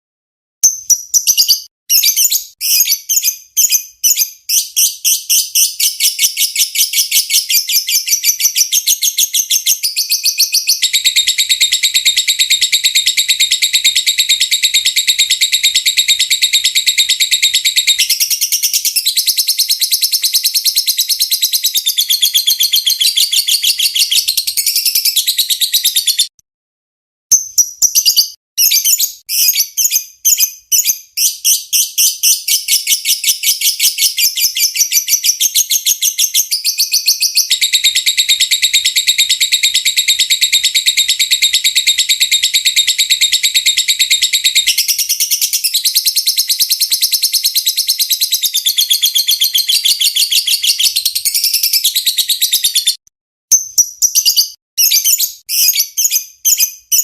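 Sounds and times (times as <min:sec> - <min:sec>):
lovebird chattering and trilling: 0:00.6 - 0:26.3, 0:27.3 - 0:57.0.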